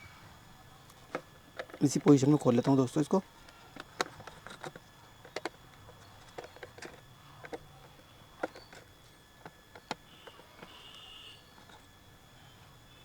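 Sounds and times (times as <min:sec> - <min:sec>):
clicks and taps on plastic casing: 0:01.0 - 0:02.8, 0:03.4 - 0:11.8
faint high squeak: 0:10.1 - 0:13.0.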